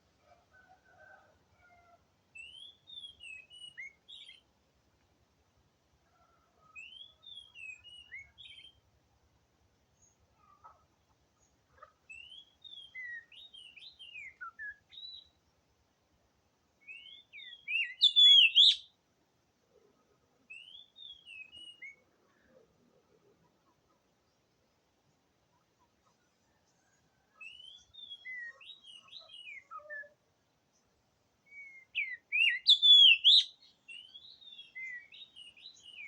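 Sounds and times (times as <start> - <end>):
bird whistled song: 2.4 - 4.4, 12.1 - 15.4, 16.8 - 18.9, 20.5 - 22.0, 27.4 - 30.2, 31.5 - 36.0.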